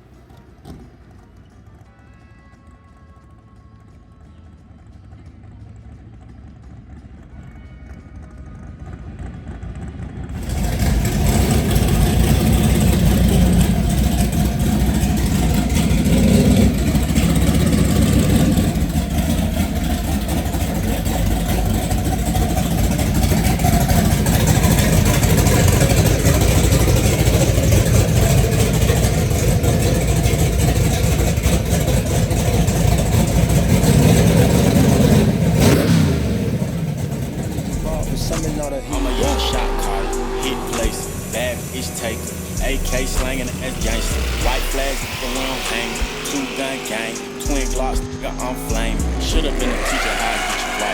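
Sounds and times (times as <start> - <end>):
car engine at high revs: 9.7 - 50.9.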